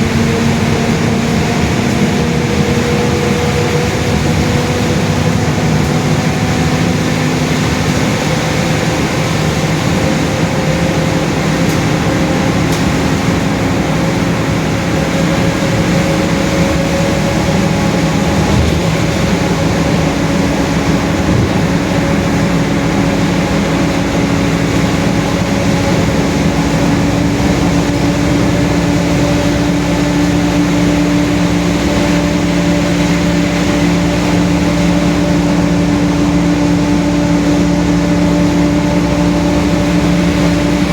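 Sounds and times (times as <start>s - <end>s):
bus differential whine: 0.0s - 40.9s
road and engine noise: 0.0s - 40.9s.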